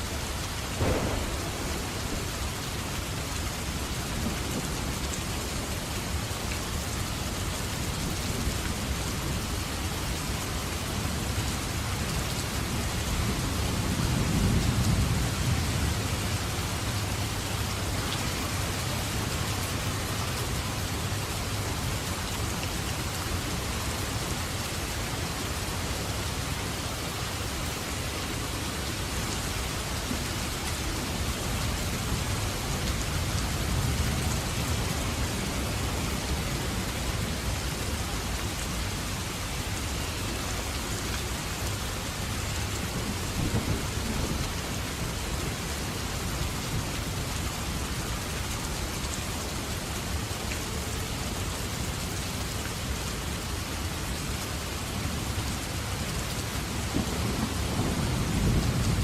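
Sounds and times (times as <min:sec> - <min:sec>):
heavy rain: 0:00.0 - 0:59.0
rolls of thunder: 0:00.8 - 0:02.5.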